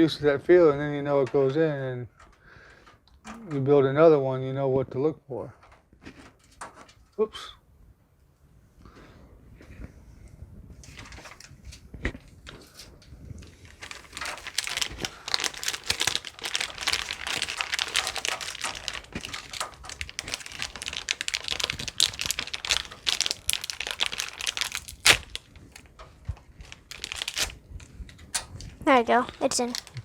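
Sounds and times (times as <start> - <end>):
plastic crinkling and clicking: 13.3 - 30.0.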